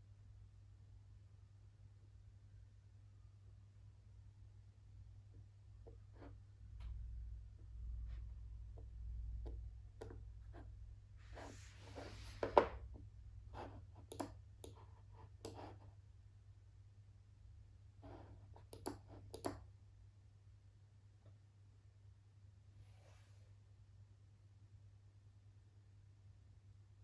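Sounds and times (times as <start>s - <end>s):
faint low hum: 0.0s - 27.0s
stylus writing scratch: 10.0s - 12.6s, 13.5s - 15.9s
stylus tapping on screen: 13.6s - 15.8s, 18.6s - 19.6s
mouse clicks: 14.0s - 15.7s, 18.6s - 19.6s.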